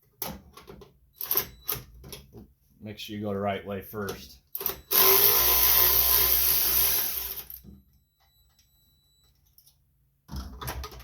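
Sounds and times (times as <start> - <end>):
power drill spinning: 4.9 - 7.6.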